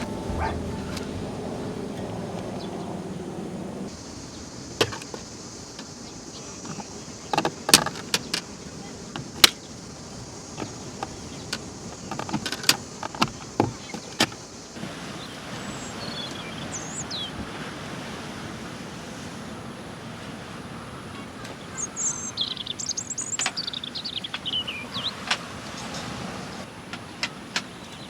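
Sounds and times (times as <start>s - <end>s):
small birds chirping: 0.0s - 4.7s, 15.6s - 17.4s, 21.4s - 26.6s
steady outdoor noise: 0.0s - 28.0s.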